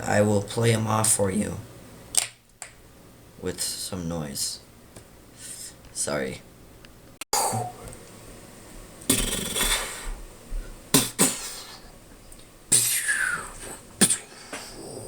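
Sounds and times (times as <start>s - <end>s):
person making mouth firework noises: 9.1s - 10.2s, 10.9s - 11.9s, 12.7s - 14.9s.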